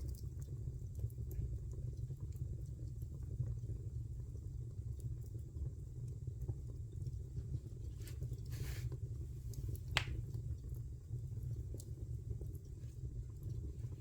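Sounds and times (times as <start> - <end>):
fire flames rumbling: 0.0 - 14.0
fire crackling: 5.0 - 14.0
sharp pop of fire: 9.9 - 10.2.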